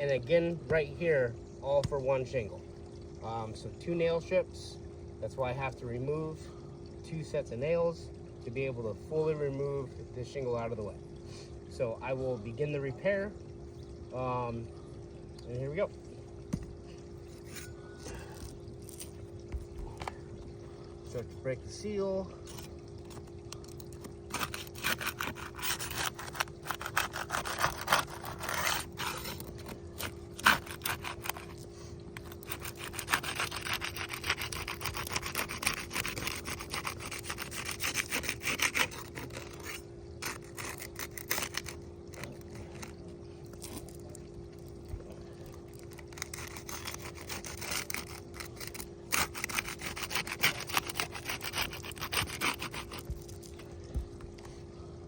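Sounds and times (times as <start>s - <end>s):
small clicks and scratches: 22.5s - 44.7s, 45.5s - 54.4s
metal tool scraping roof shingles: 24.3s - 31.5s, 32.2s - 42.9s, 46.1s - 53.1s.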